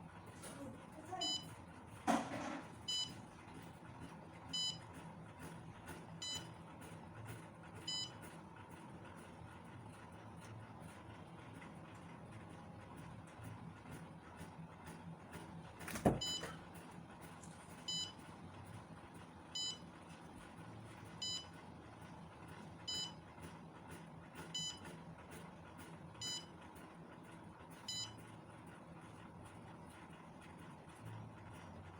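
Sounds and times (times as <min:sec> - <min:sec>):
smoke alarm beeping: 0:19.6 - 0:19.8, 0:21.2 - 0:21.5.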